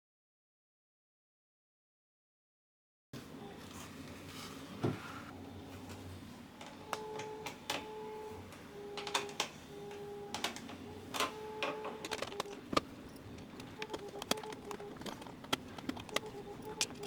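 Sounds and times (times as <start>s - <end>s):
hard plastic parts clicking: 10.4s - 17.0s.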